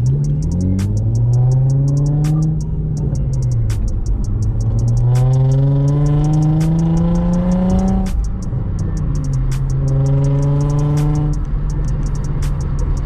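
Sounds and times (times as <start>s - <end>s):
background music with ticking beat: 0.0s - 13.0s
car engine accelerating: 0.0s - 13.0s.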